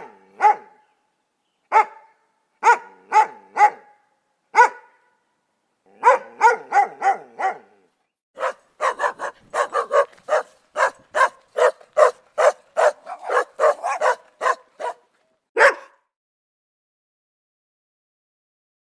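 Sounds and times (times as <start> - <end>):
dog barking: 0.0 - 0.8, 1.7 - 5.2, 5.9 - 7.7, 8.4 - 16.1.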